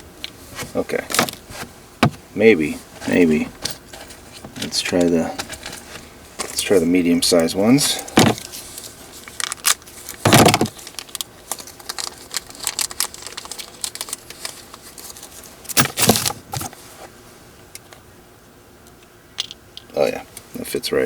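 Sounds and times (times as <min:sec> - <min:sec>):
rustling clatters: 0:02.9 - 0:06.8.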